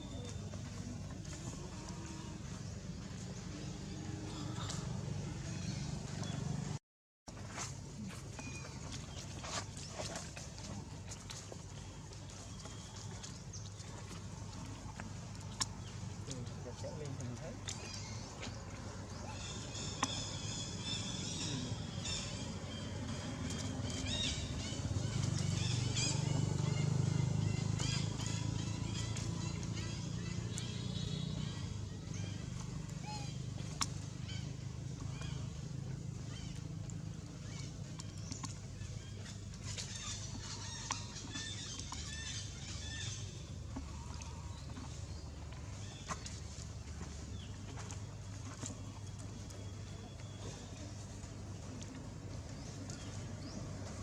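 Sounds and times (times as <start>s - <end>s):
steady low rumble: 0.0s - 6.8s
low steady rumble: 0.0s - 54.0s.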